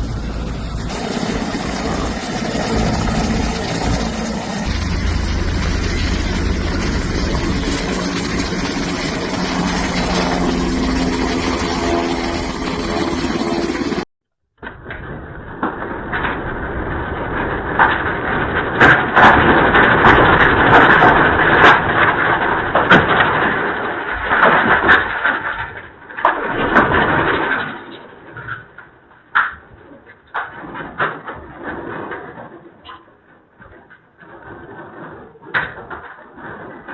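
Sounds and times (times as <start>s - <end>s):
vehicle engine humming: 0.0s - 14.0s
rough rushing noise: 0.0s - 14.1s.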